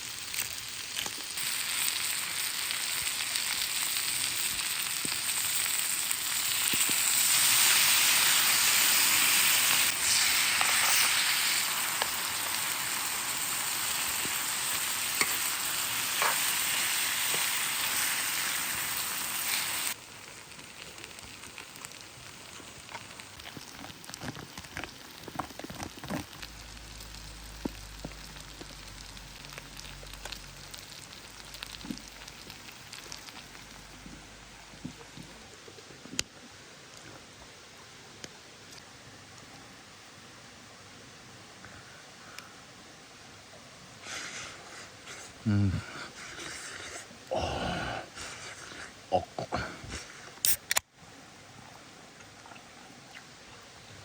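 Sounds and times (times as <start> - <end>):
small crackles and ticks: 0.0 - 8.7, 9.6 - 17.8, 19.4 - 37.4, 38.2 - 39.5
food sizzling on iron plate: 0.0 - 35.2
quiet hiss: 0.0 - 54.0.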